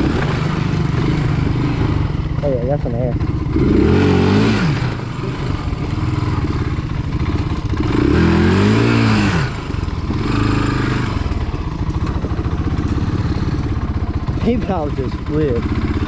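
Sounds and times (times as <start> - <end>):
atv engine revving: 0.0 - 16.0.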